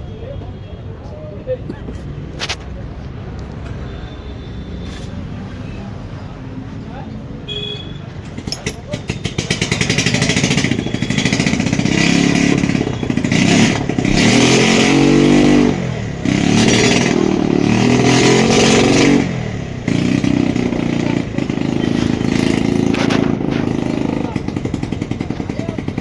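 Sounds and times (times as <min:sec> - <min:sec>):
motorcycle engine revving: 0:08.3 - 0:26.0.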